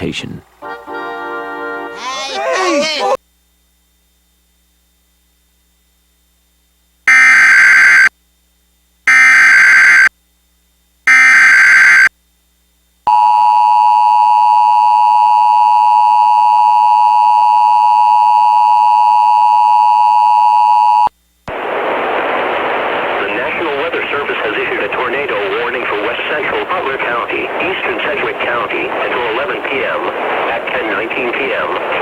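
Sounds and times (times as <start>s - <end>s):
person reading a warning: 23.2s - 32.0s.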